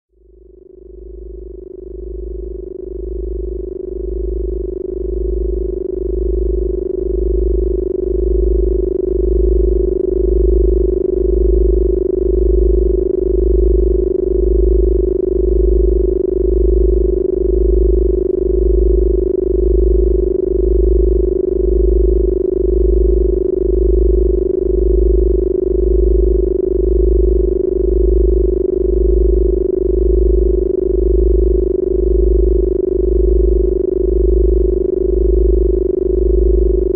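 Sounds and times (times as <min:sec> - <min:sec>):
pulsing deep bass tone: 0:02.0 - 0:36.9.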